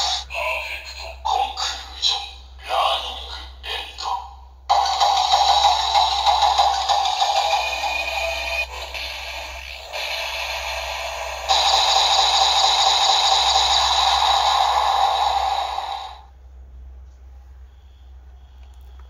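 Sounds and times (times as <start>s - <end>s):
toy belt electronic static sound: 4.7s - 16.3s.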